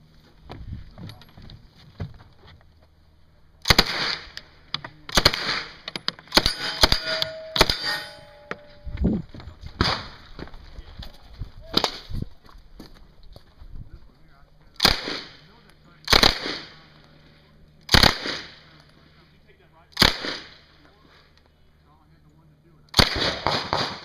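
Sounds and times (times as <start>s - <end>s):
gunshots: 3.6s - 4.3s, 5.1s - 8.4s, 14.8s - 15.4s, 16.1s - 16.8s, 17.9s - 18.6s, 20.0s - 20.6s, 23.0s - 24.0s
steel targets ringing: 6.3s - 9.0s.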